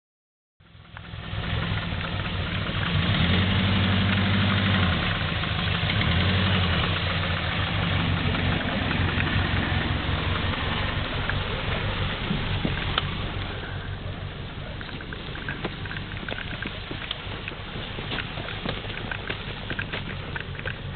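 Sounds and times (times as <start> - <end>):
car engine with rod knock: 5.8 - 13.6, 14.6 - 20.9.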